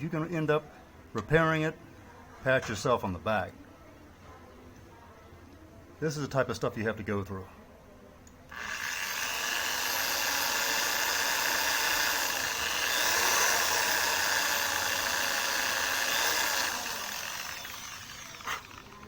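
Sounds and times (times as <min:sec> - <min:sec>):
rotary power tool whining: 0:08.5 - 0:19.0.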